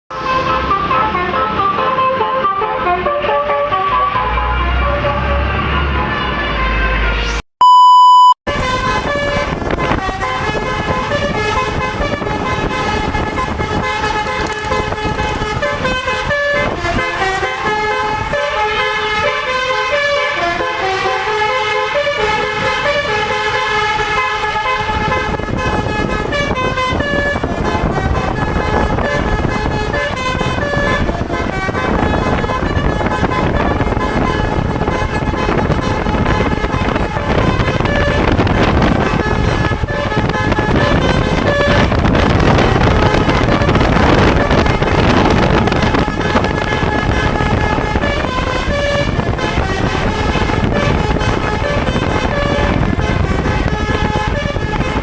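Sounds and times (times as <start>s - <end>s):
air horns playing melody: 0.1s - 7.4s, 8.5s - 55.0s
vehicle rumble: 0.1s - 7.4s, 8.5s - 55.0s
loud beep: 7.6s - 8.4s.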